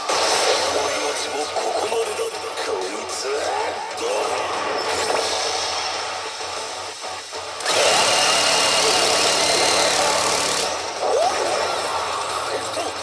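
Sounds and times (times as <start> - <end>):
background machine sound: 6.4 - 12.0.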